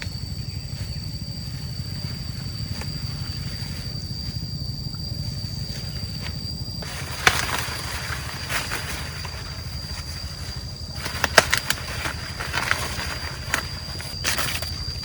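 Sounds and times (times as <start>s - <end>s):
pulsing low rumble: 0.0s - 15.0s
rustling: 6.2s - 15.0s.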